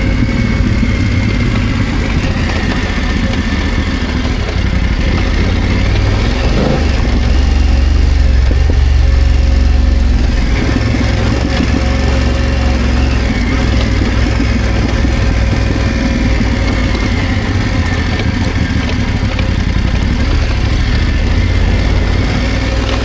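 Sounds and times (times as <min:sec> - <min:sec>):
motorcycle engine at low revs: 0:00.0 - 0:23.0.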